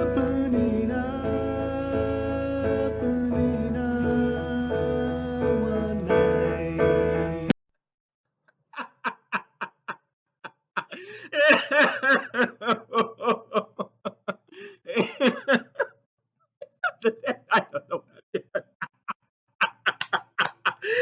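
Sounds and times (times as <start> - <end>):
person laughing: 8.8 - 16.0, 16.6 - 21.0.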